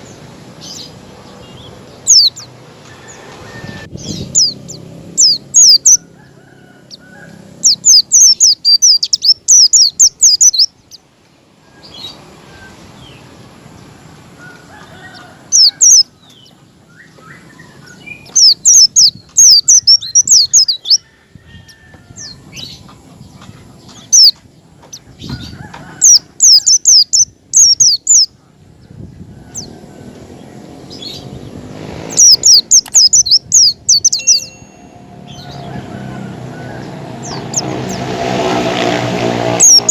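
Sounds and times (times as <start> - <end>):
white-eye singing high chirps: 32.2 - 35.6.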